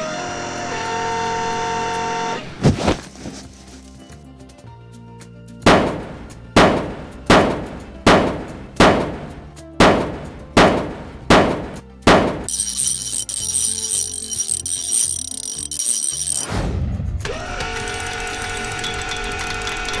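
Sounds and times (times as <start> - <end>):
loud sharp impacts: 5.7 - 16.5
high shimmering ringing: 12.5 - 16.5.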